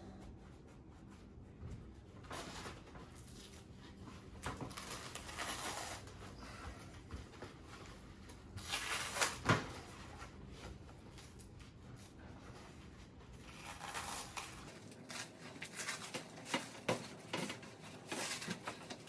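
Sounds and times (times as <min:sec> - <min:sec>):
peel ply tearing and rustling: 0:02.3 - 0:06.4, 0:07.8 - 0:11.7, 0:13.4 - 0:19.0.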